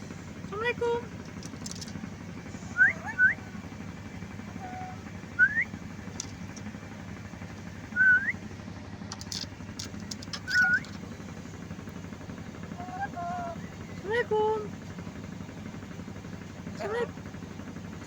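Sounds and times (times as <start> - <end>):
low background hum: 0.0 - 18.0
parrot short rising whistles: 2.8 - 3.4, 5.4 - 5.7, 8.0 - 8.4, 10.5 - 10.8.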